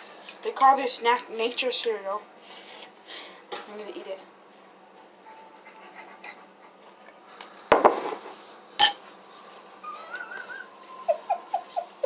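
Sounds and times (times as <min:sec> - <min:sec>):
spoon clinking in a bowl: 0:08.8 - 0:09.0.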